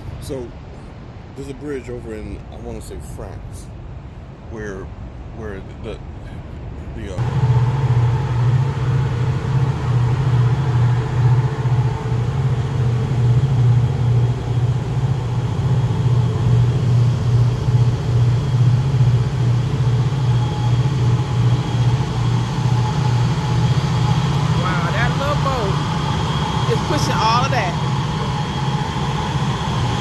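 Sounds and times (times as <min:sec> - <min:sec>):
large diesel engine running: 0:07.2 - 0:30.0.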